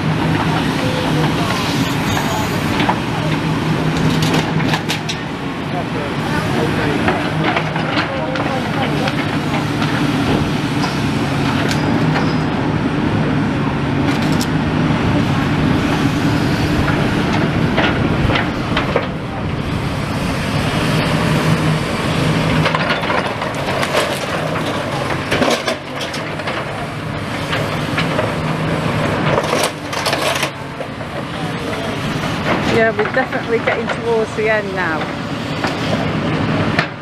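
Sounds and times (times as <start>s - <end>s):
diesel engine running: 0.0s - 37.0s
masonry and rubble cracking: 22.2s - 37.0s.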